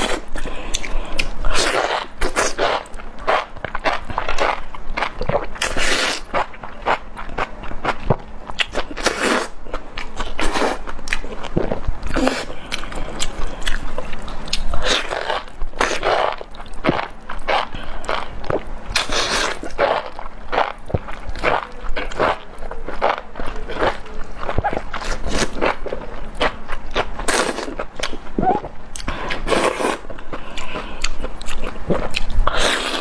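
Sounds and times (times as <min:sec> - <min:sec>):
noisy mouth swishes: 0:28.4 - 0:30.0.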